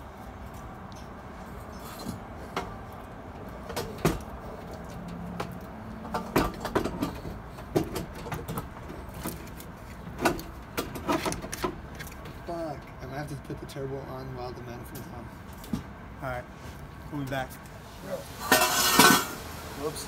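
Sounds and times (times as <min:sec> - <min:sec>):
metal clanks and knocks: 0:05.0 - 0:09.5, 0:18.4 - 0:19.4.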